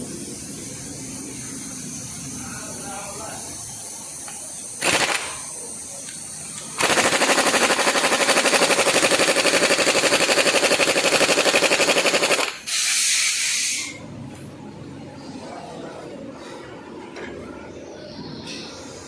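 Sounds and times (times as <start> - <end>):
compressed air hissing: 0.0 - 14.0
pneumatic tool hammering: 4.2 - 14.0.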